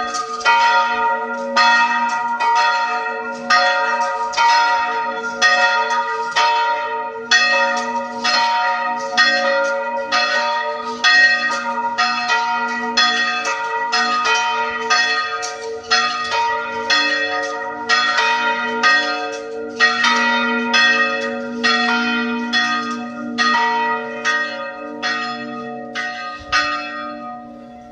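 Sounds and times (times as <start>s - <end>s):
church bells ringing: 0.0s - 27.9s.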